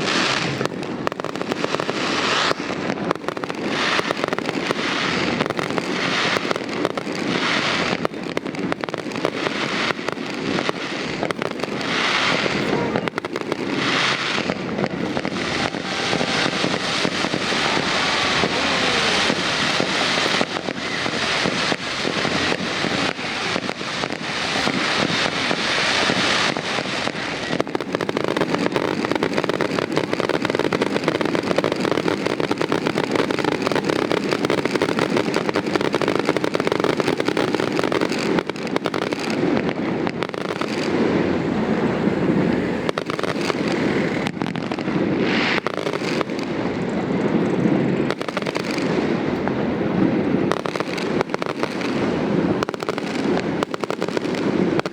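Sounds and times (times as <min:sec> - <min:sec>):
fireworks popping and crackling: 0:00.0 - 0:54.9.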